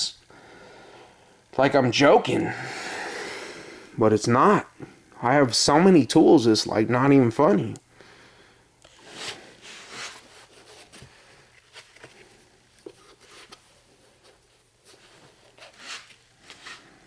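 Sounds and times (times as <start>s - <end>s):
hand tools scraping on carpet: 14.9s - 17.0s.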